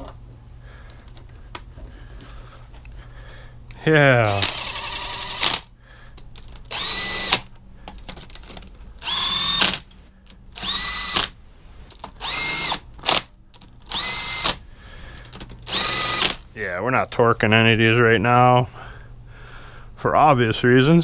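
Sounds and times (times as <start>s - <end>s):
power driver motor whine: 4.2s - 5.7s, 6.7s - 7.5s, 9.0s - 9.8s, 10.6s - 11.4s, 12.2s - 13.2s, 13.9s - 14.6s, 15.7s - 16.4s.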